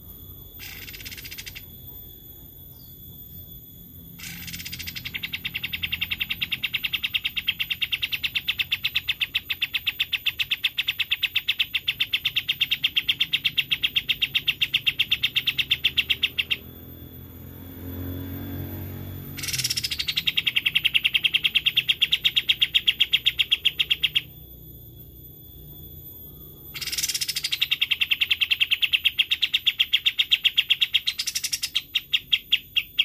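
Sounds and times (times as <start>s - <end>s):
bird song with rapid trill: 0.0s - 33.0s.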